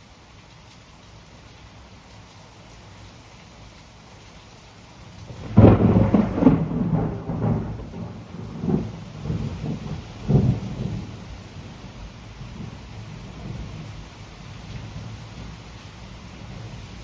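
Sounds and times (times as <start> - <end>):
steady rain falling: 0.0 - 17.0
thunder rumbling: 5.3 - 14.0.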